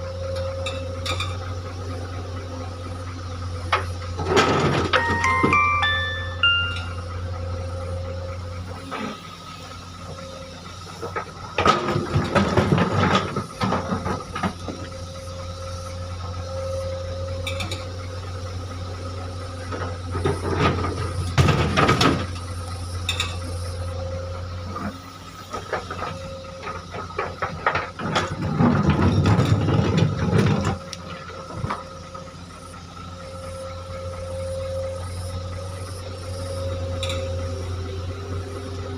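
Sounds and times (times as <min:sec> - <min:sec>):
diesel engine running: 0:00.0 - 0:38.9
boulders clattering and scraping: 0:11.1 - 0:14.9, 0:25.7 - 0:31.9.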